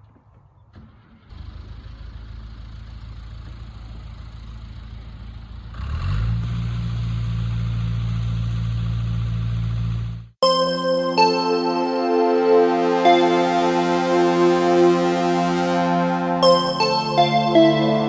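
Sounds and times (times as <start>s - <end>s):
vehicle engine running and revving: 1.3s - 10.3s.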